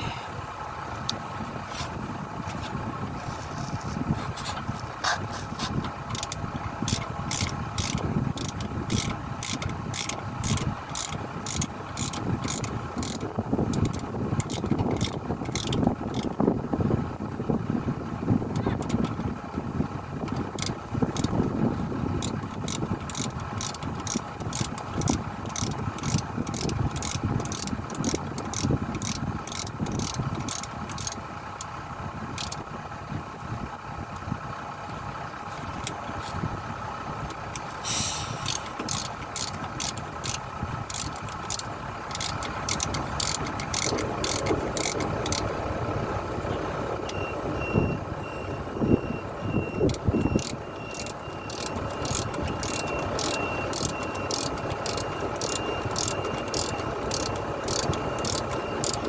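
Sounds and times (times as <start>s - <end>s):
engine running: 0.0s - 59.0s
mechanical clicking: 5.8s - 16.4s, 20.3s - 21.4s, 22.2s - 31.7s, 32.4s - 32.6s, 37.3s - 45.5s, 49.8s - 59.0s.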